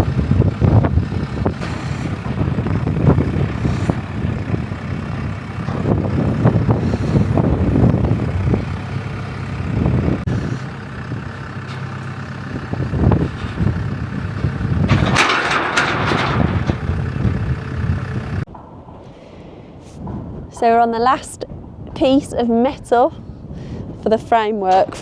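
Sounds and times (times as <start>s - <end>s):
digger diesel engine: 0.0s - 18.5s
steel framework knocking and clanking: 0.0s - 19.0s
metal scraping and crashing: 1.0s - 18.4s.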